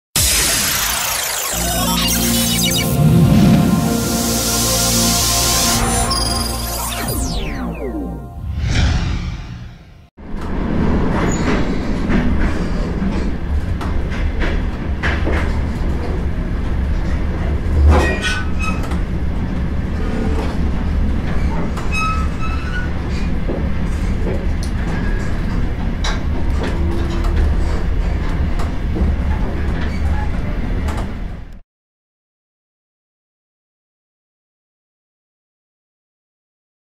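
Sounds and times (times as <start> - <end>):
intro music: 0.2 - 10.0.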